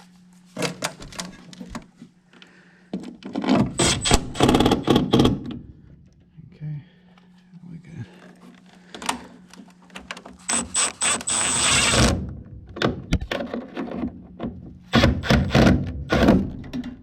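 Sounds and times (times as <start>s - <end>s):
power screwdriver running: 3.8s - 5.0s, 10.4s - 12.2s.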